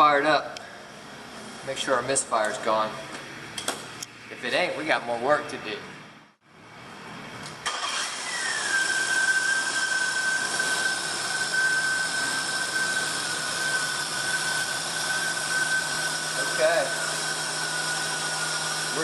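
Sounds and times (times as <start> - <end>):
car engine idling with whine: 6.5 - 19.0
car engine starting: 7.4 - 10.8.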